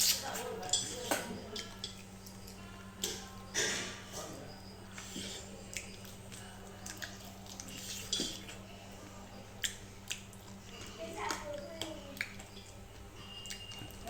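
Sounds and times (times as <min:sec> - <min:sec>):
wet chewing and mouth smacks: 0:05.0 - 0:08.6, 0:09.6 - 0:14.0.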